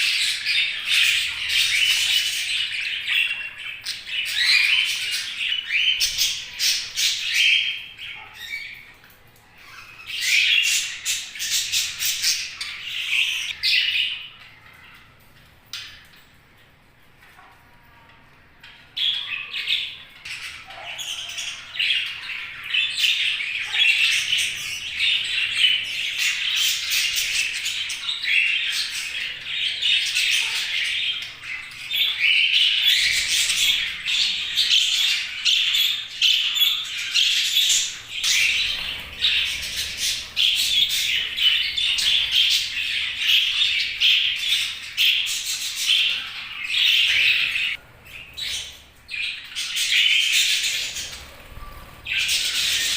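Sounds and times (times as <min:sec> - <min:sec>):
budgerigars chattering and chirping: 0:19.1 - 0:52.9.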